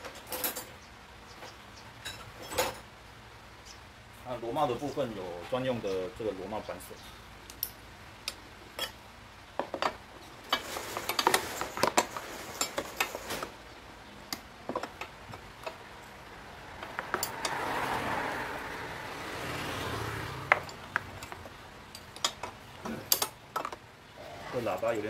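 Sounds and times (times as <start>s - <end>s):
metal tools clinking and tapping: 0.0s - 0.8s, 2.0s - 2.8s, 7.5s - 9.0s, 9.6s - 13.5s, 20.5s - 23.8s
scraping rustle: 10.2s - 13.7s.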